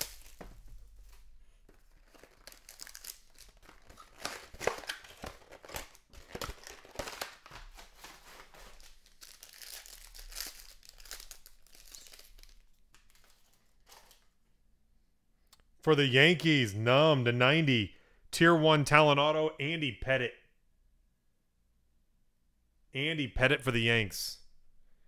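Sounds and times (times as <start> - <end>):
plastic packaging crinkling and tearing: 0.0 - 14.3.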